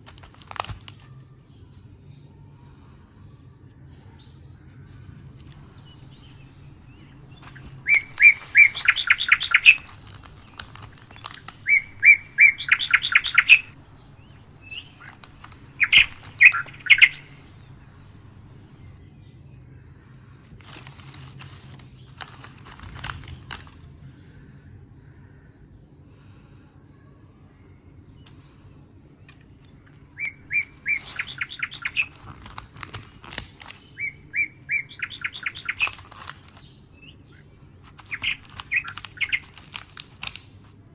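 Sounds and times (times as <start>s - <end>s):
rustling: 0.0s - 3.7s, 4.5s - 18.0s, 20.4s - 24.0s, 29.2s - 40.9s
songbird chirping: 0.0s - 40.9s.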